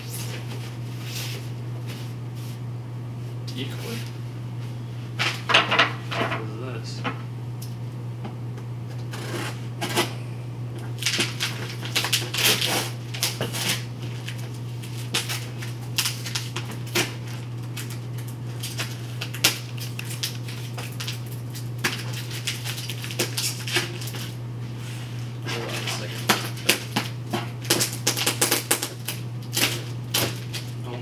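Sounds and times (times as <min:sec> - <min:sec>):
packaging rustling and scraping: 0:11.0 - 0:27.0.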